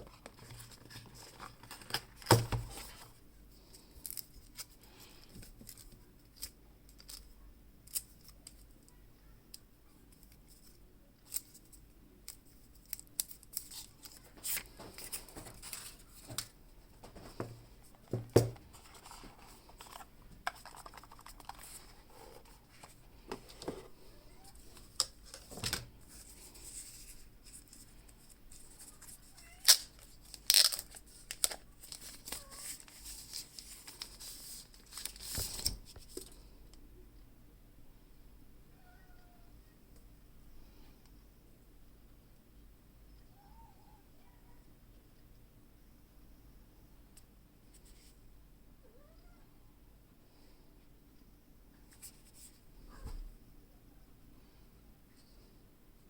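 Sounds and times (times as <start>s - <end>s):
handling packaging clicks and taps: 12.3s - 21.8s.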